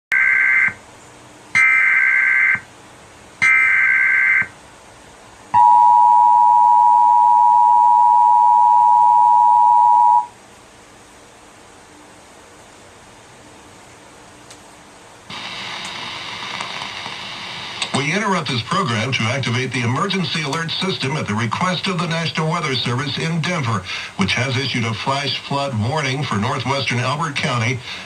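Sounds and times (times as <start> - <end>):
shrill data signal bursts: 0.1 - 0.8, 1.6 - 2.6, 3.4 - 4.5, 5.6 - 10.3
two-tone attention signal: 5.6 - 10.3.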